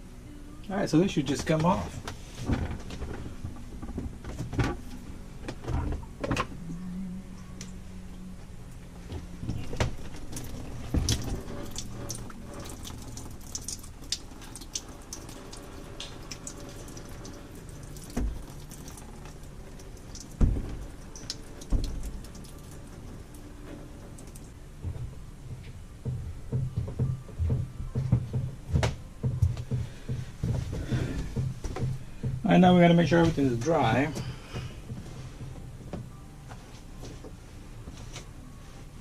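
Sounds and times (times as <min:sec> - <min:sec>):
water trickling and dripping: 0:09.2 - 0:24.6
heavy thumps: 0:24.8 - 0:36.2.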